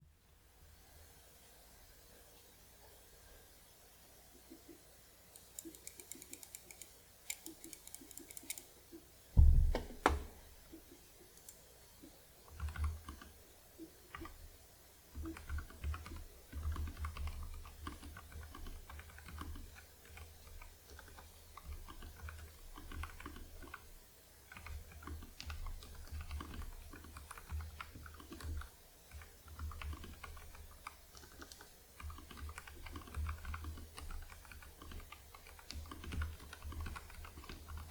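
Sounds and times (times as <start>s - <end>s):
mechanical keyboard typing: 5.4s - 8.7s, 12.5s - 13.4s, 14.1s - 14.4s, 15.1s - 23.9s, 24.5s - 37.9s
loud thump: 9.4s - 10.3s.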